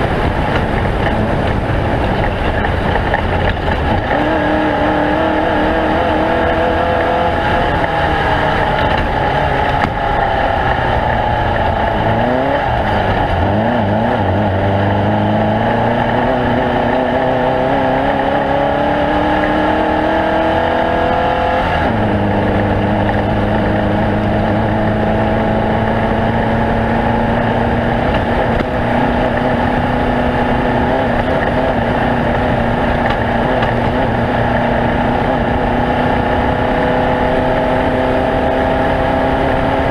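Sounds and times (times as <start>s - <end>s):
race vehicle engine running: 0.0s - 39.9s.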